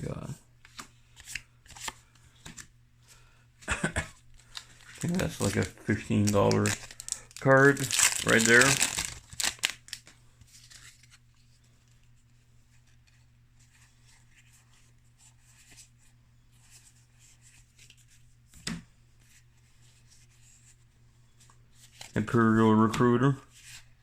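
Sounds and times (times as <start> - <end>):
faint electrical hum: 0.0 - 24.0
cards clicking and rustling: 0.6 - 2.7, 4.4 - 11.2.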